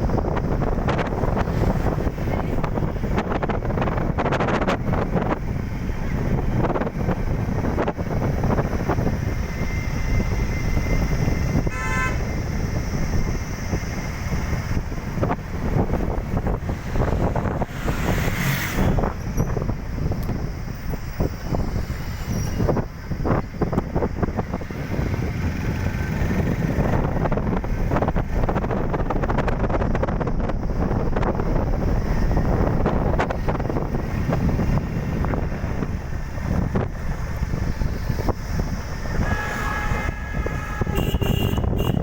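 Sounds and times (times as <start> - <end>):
vehicle engine low rumble: 0.0 - 42.0
vehicle horn: 11.6 - 12.4, 39.0 - 42.0.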